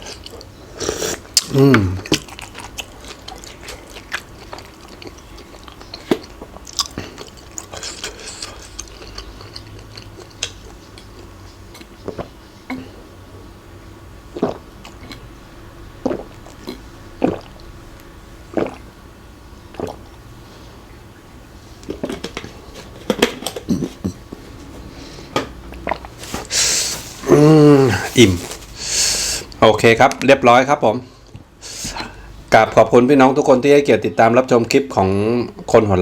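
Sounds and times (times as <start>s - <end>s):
chewing and crunching food: 0.0s - 12.4s, 21.8s - 24.2s, 25.7s - 27.2s
wet mouth sounds: 0.0s - 12.9s, 14.3s - 15.3s, 16.0s - 17.7s, 18.5s - 18.9s, 19.7s - 20.1s, 25.7s - 29.6s.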